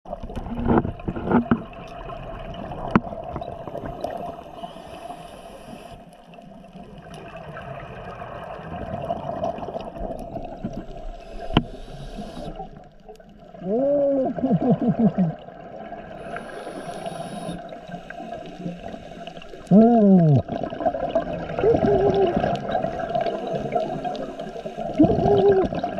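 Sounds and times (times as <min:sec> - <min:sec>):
exhaled bubbles: 0:00.1 - 0:25.9
diver regulator breathing: 0:03.9 - 0:06.2, 0:10.4 - 0:12.8, 0:16.1 - 0:19.8, 0:22.3 - 0:25.4
high hiss: 0:11.0 - 0:12.7, 0:16.2 - 0:19.7.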